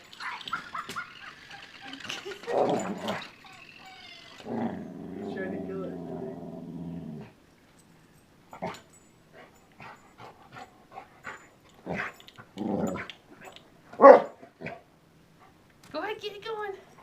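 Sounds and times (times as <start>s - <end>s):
puppy yipping and grunting: 0.2s - 4.9s.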